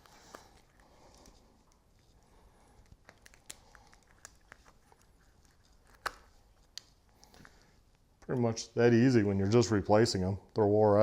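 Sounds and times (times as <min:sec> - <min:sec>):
rubber grip tearing: 0:02.8 - 0:07.0.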